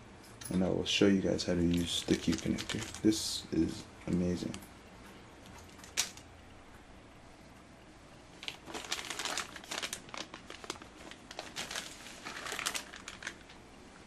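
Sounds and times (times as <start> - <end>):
plastic packaging crinkling: 1.6 - 3.4, 5.4 - 6.3, 8.4 - 13.7.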